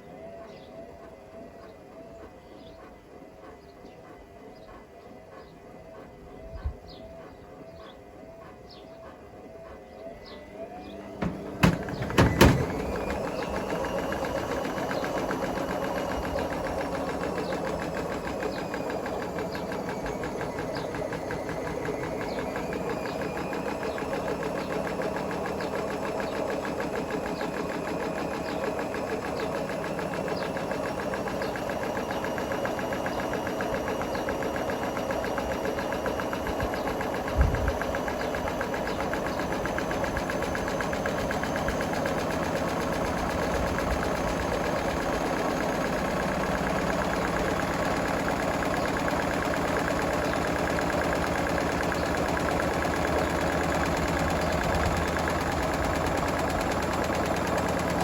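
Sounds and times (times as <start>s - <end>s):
washing machine motor whine: 0.0s - 58.0s
loud knocks: 11.2s - 13.0s.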